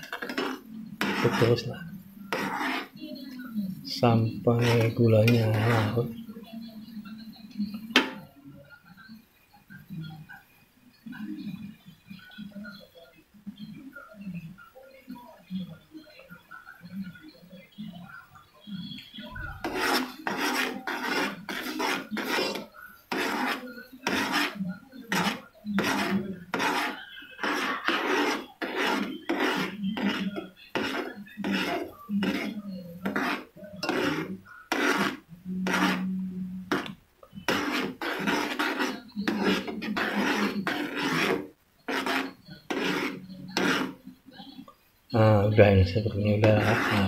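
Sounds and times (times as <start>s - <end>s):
utensil scraping cooking pot: 0.0s - 3.4s, 4.0s - 6.2s, 7.6s - 8.3s, 18.8s - 44.6s, 45.2s - 47.0s.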